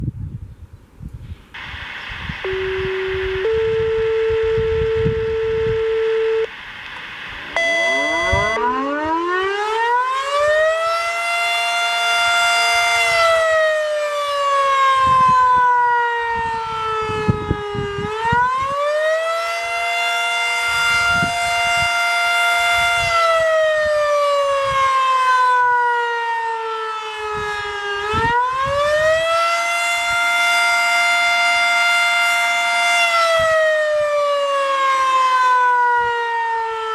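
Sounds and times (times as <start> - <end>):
fire siren winding up and down: 1.6 - 36.9
dispatch paging tones: 2.4 - 6.5, 7.5 - 9.1.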